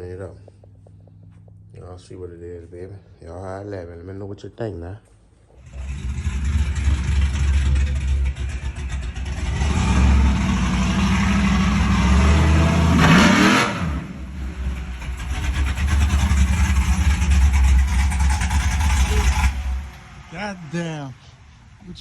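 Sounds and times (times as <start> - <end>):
truck engine revving: 5.6 - 20.8.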